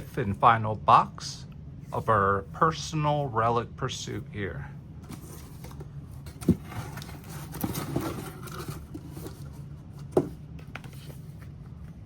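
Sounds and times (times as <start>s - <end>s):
steady low hum: 0.0s - 12.0s
packaging scraping and rustling: 5.0s - 11.6s.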